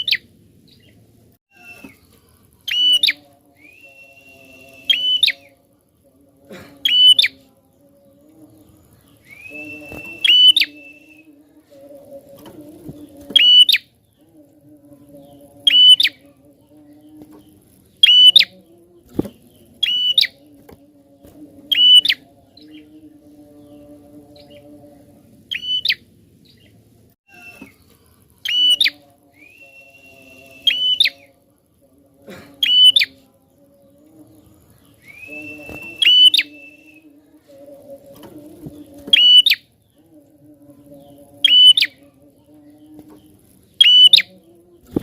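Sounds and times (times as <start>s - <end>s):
bird whistled notes: 1.5s - 2.0s, 9.2s - 11.2s, 35.0s - 37.0s, 43.8s - 44.3s.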